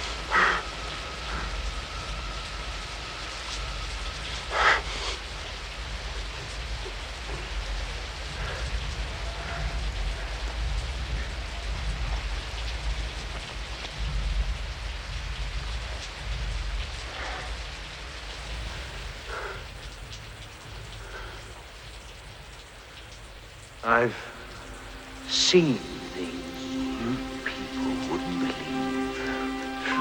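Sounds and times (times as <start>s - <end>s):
heavy rain falling: 0.0s - 30.0s
deep low rumble: 23.3s - 29.7s.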